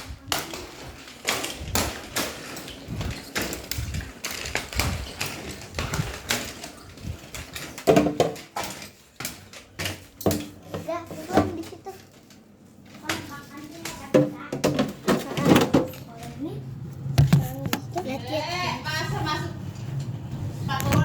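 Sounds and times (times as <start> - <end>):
irregular knocks and clatter: 0.7 - 16.2, 17.1 - 18.1.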